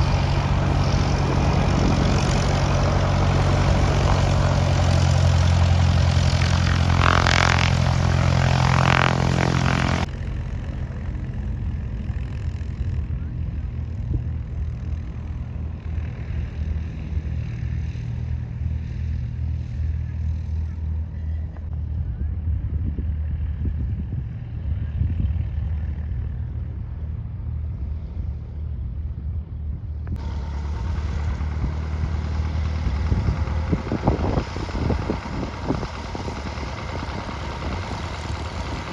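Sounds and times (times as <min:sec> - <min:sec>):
engine idling: 0:00.0 - 0:22.3, 0:29.4 - 0:38.9.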